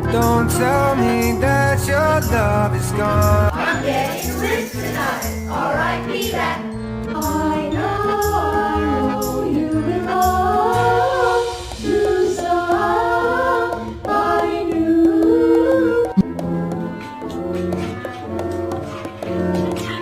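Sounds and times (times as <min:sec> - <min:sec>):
steady bass line: 0:00.0 - 0:03.5
person singing: 0:00.0 - 0:05.4.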